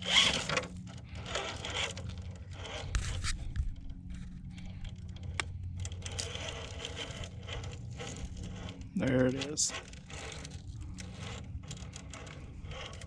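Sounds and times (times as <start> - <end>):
low drivetrain hum: 0.0 - 13.0
tyres scraping on rock: 5.9 - 13.0.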